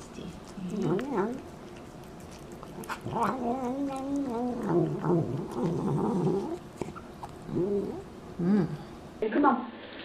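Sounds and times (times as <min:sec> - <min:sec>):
cat wavering vocal call: 0:03.0 - 0:06.6.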